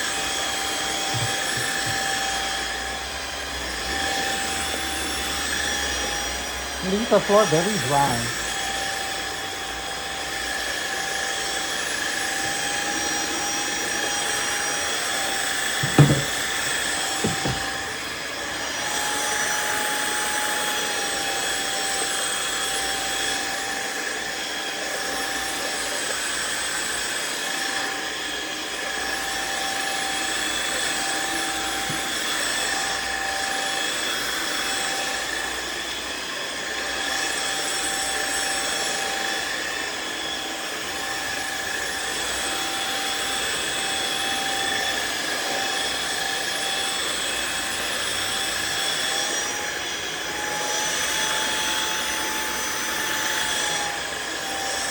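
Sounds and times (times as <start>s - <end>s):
floor washer whine: 0.0s - 54.9s
short knocks: 15.8s - 17.9s.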